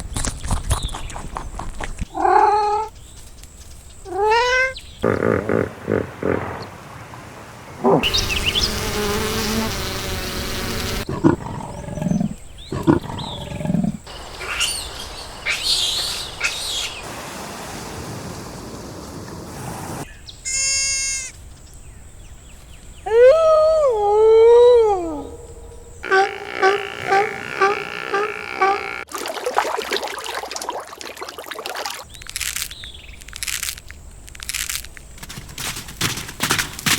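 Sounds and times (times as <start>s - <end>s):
tiger growls and roars: 11.1s - 14.1s.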